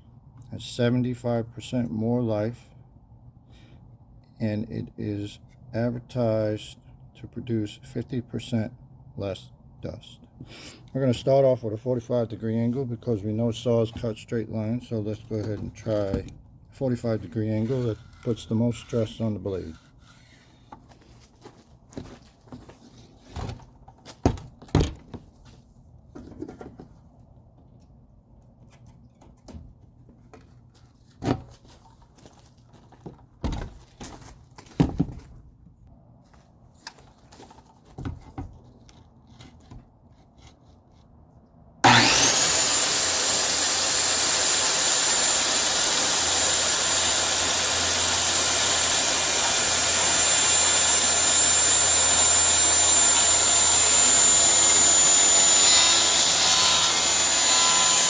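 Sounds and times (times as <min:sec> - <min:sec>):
circular saw cutting board: 0:16.9 - 0:20.5, 0:41.8 - 0:58.0.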